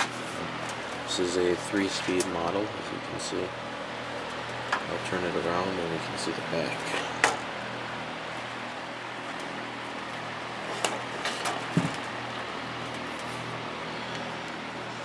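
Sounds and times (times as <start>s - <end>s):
plastic fan clicks and knocks: 10.8s - 13.3s.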